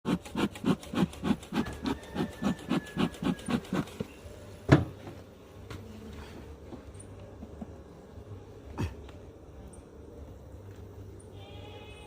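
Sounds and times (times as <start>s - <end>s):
rhythmic rubbing strokes: 0.1s - 4.1s.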